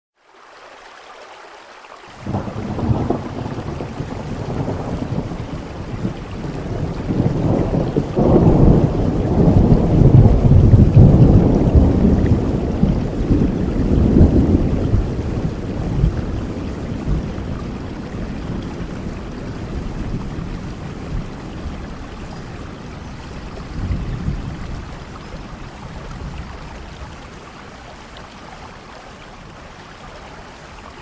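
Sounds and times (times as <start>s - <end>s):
steady rain: 0.2s - 31.0s
thunder rumbling: 2.2s - 27.4s.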